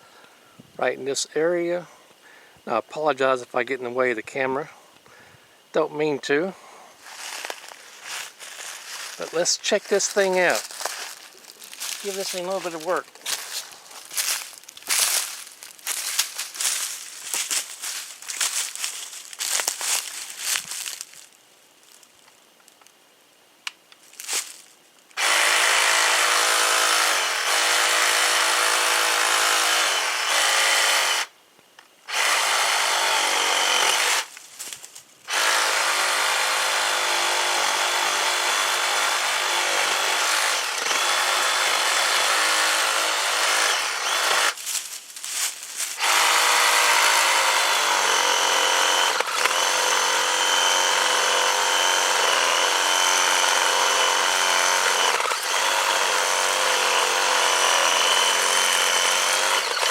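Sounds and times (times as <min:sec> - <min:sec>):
reciprocating saw cutting wood: 0:25.2 - 0:31.3, 0:32.1 - 0:34.3, 0:35.3 - 0:44.6, 0:46.0 - 0:59.9.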